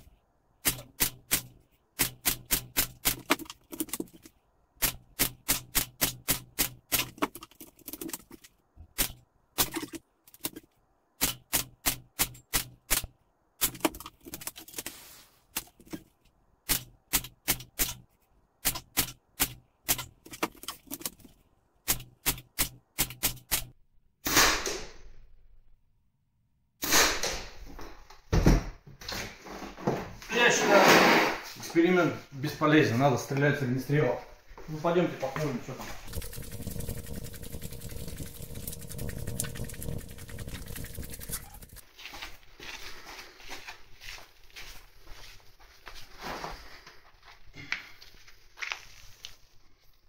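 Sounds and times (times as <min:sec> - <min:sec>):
airgun shots: 0:24.2 - 0:25.1, 0:26.8 - 0:27.6.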